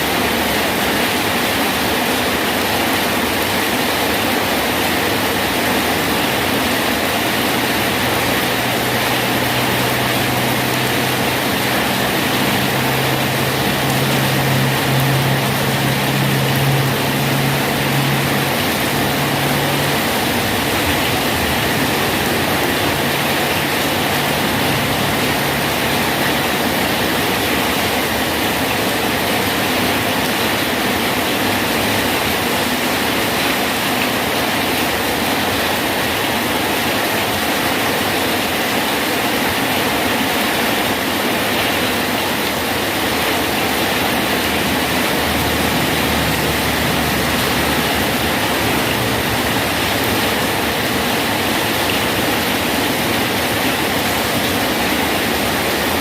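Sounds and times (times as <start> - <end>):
steady rain hissing: 0.0 - 56.0
low engine hum: 7.6 - 27.8.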